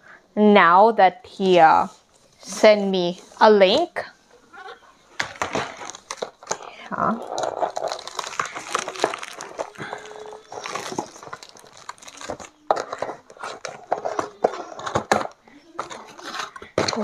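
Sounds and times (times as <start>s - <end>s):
packaging rustling and crinkling: 5.1s - 17.0s.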